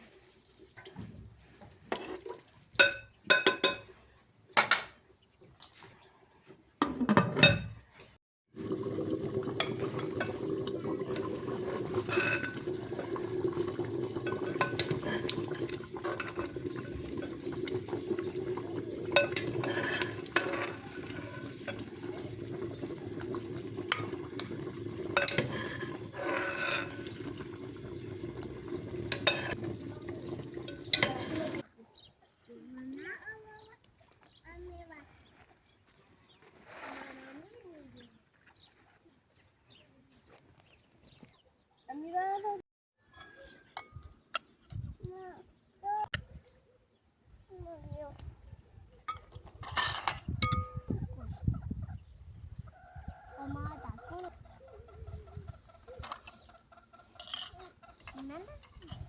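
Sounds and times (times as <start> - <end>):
cooking hiss: 8.6 - 31.6
spoon clinking against pot: 29.1 - 29.6.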